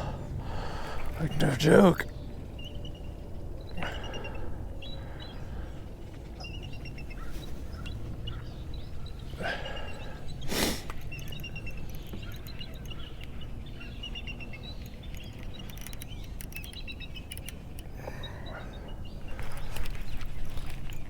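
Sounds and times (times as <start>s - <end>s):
low outdoor rumble: 0.0s - 10.4s
small birds chirping: 0.0s - 21.0s
faint clicks: 10.8s - 18.3s, 19.3s - 21.0s.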